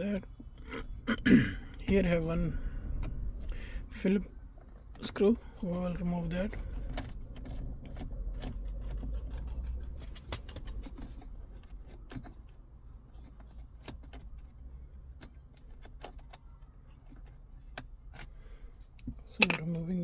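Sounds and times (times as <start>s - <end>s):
low rumble: 0.0s - 8.3s.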